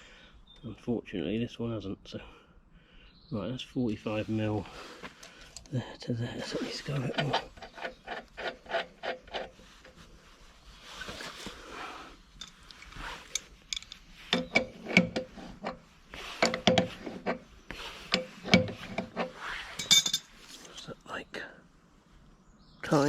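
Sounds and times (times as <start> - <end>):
spanner scraping: 6.5 - 10.2, 12.4 - 20.3
spanner clicking on a nut: 12.4 - 15.8.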